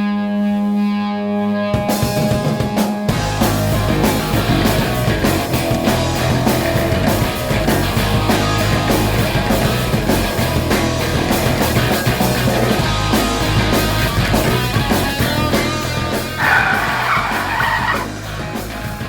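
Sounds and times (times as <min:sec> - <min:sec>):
loud rock music: 0:00.0 - 0:19.0.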